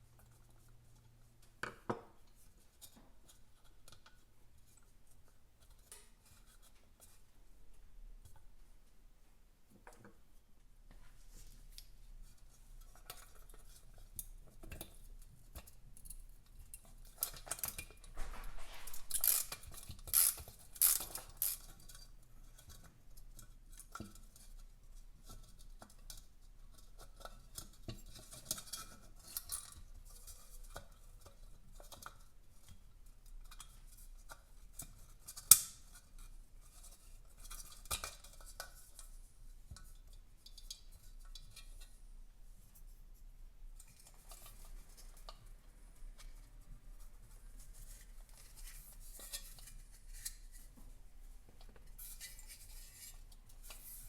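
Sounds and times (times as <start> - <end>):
metal parts clinking and scraping: 18.2 - 21.7.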